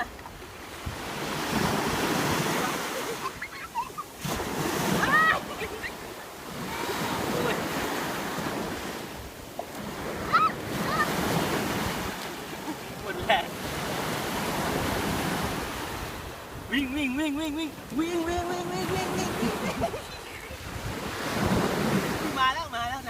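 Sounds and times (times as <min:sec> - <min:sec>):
sea waves breaking: 0:00.0 - 0:23.0
wind buffeting microphone: 0:17.7 - 0:23.0.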